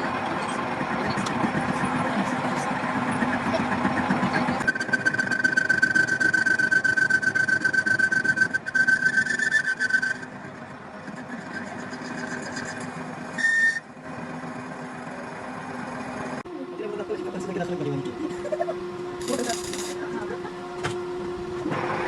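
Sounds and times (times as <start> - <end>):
power tool whine and rattle: 19.2 - 20.0.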